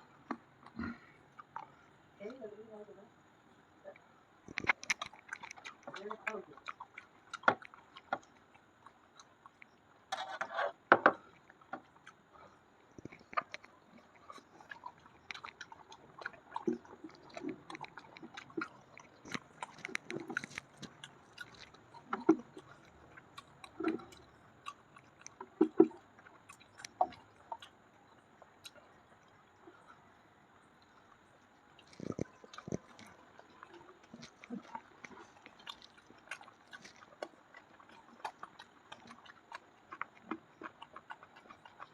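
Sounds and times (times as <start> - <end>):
wet mouth clicks: 4.5 - 10.3, 13.0 - 27.8, 28.6 - 28.8, 31.8 - 41.9
person chewing food: 4.5 - 30.0, 30.8 - 41.9.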